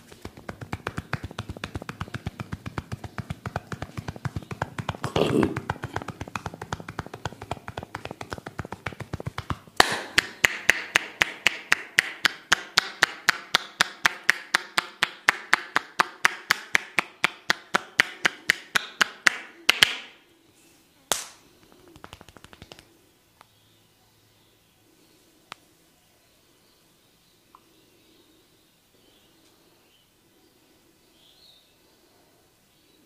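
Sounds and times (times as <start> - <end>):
hands tapping on head: 0.0 - 20.1, 21.1 - 22.9.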